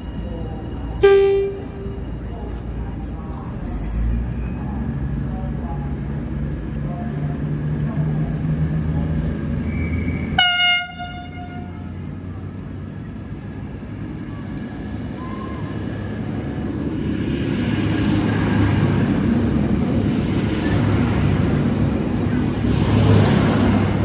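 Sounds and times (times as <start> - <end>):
train rumbling: 0.0 - 24.0
train horn blast: 1.0 - 2.0, 10.4 - 12.0.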